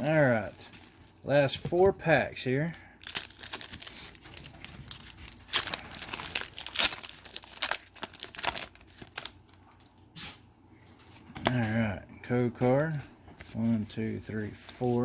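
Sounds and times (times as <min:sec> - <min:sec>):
foil wrapper crinkling and tearing: 0:00.0 - 0:10.0.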